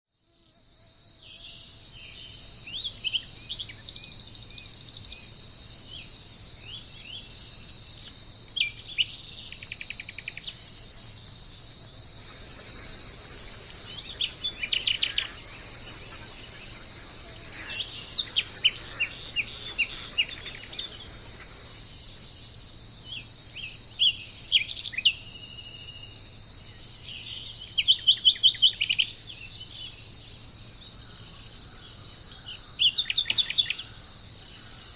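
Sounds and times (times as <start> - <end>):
high insect drone: 0.1 - 34.9
birds chirping: 8.4 - 25.2.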